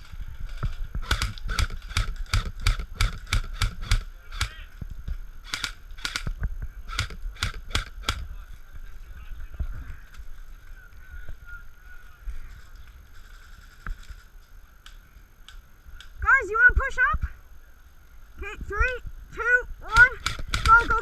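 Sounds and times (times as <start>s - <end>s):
airsoft gun shots: 1.0s - 4.6s, 5.4s - 6.3s, 6.9s - 8.2s, 19.9s - 21.0s.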